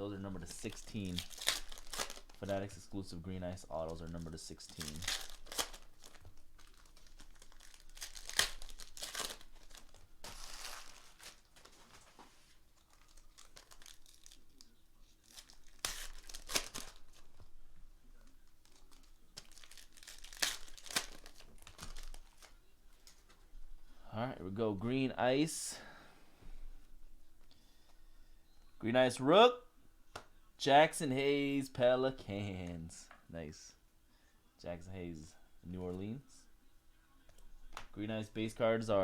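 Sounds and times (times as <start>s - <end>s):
plastic wrappers tearing and crinkling: 0.3s - 2.8s, 3.7s - 17.4s, 18.4s - 23.4s.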